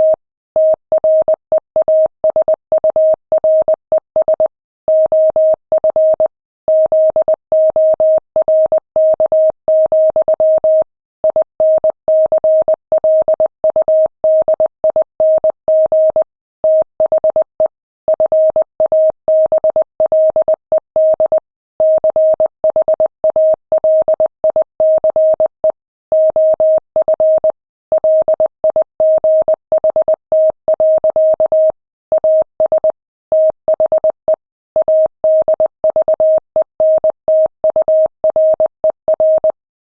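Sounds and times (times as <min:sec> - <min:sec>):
morse code beeps: 0:26.2 - 0:39.6.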